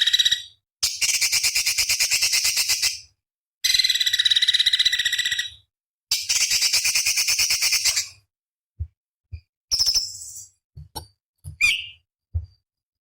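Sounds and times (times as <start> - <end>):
bird singing buzzy phrases: 11.6 - 12.0
shrill bird trill: 11.6 - 12.0.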